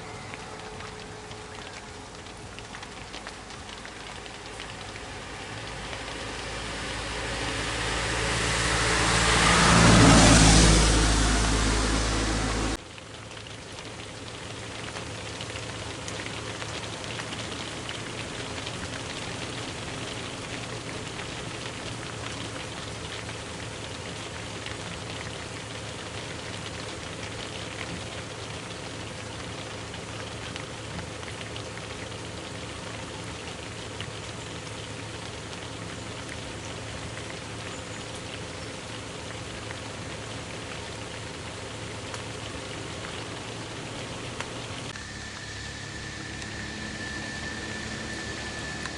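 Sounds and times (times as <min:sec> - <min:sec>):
steady hiss of noise: 0:40.0 - 0:48.9.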